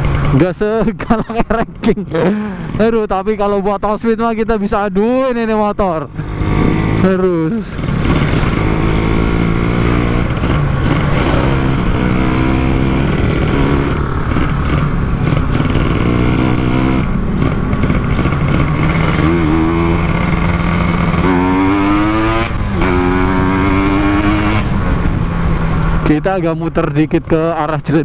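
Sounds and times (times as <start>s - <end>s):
two-stroke motorcycle engine: 0.0s - 1.0s, 6.1s - 26.2s.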